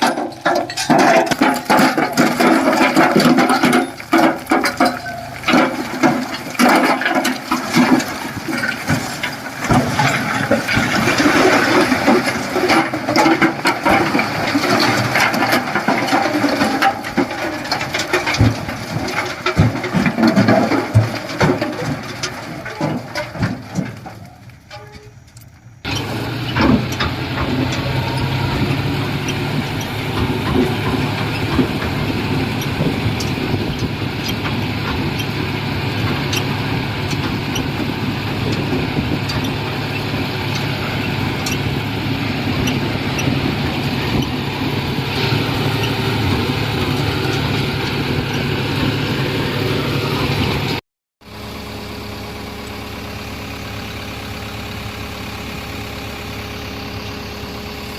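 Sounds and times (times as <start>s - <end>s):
knocks and clanks: 0.0s - 44.6s
diesel engine running: 0.0s - 57.9s.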